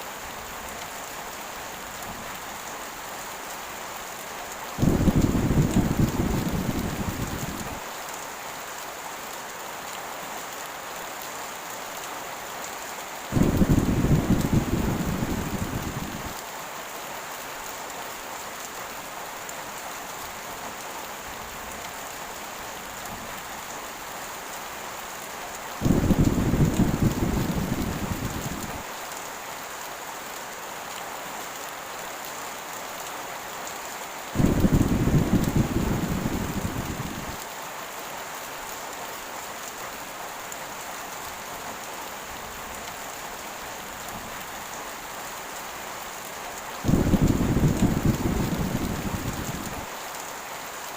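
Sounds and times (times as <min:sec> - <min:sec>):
heavy rain hissing: 0:00.0 - 0:09.4, 0:12.2 - 0:17.6, 0:18.2 - 0:30.3, 0:33.3 - 0:41.5, 0:42.2 - 0:50.9
low thunder rumbles: 0:04.8 - 0:07.8, 0:13.4 - 0:16.4, 0:25.8 - 0:28.8, 0:34.4 - 0:37.4, 0:46.9 - 0:49.9.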